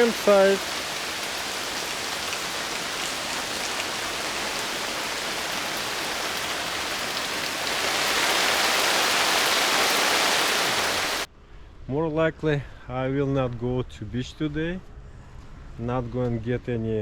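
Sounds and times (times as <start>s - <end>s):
heavy rain: 0.0s - 11.3s.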